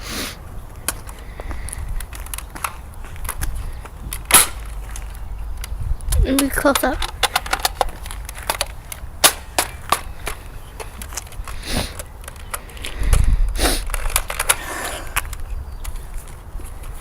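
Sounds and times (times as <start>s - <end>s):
rifle clicks and knocks: 2.0s - 13.3s, 13.9s - 14.6s.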